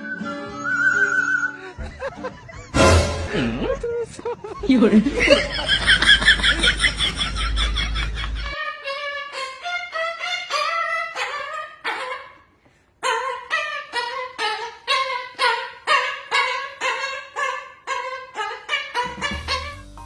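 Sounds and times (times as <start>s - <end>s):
tune of short pitched notes: 19.0s - 20.0s.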